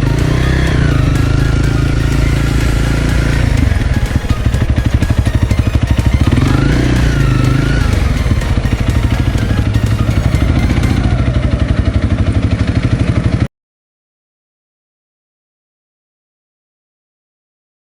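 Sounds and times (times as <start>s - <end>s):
motorcycle engine running: 0.0s - 13.4s.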